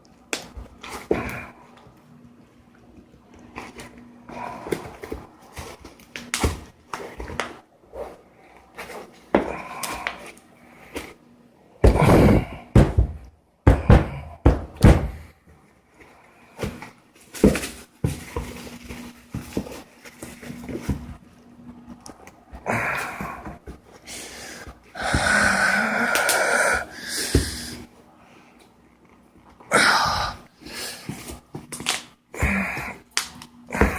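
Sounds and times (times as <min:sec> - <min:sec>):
packaging rustling: 0:16.6 - 0:21.3.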